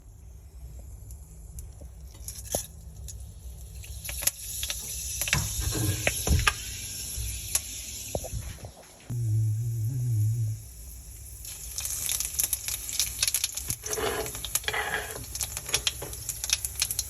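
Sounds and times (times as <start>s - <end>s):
low hum: 9.1s - 11.0s.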